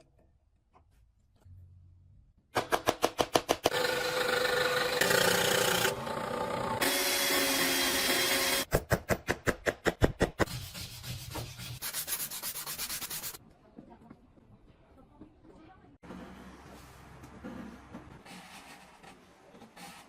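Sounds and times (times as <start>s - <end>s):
sanding on wood: 10.5s - 13.4s.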